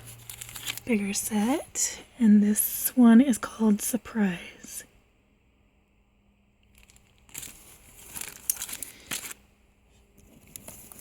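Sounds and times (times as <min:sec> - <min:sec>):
packaging crinkling: 0:00.0 - 0:01.0, 0:06.6 - 0:09.4, 0:10.2 - 0:11.0.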